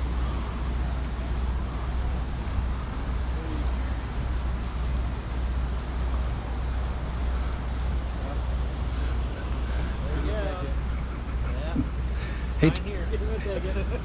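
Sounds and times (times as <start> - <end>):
water rushing through spillway: 0.0 - 10.9.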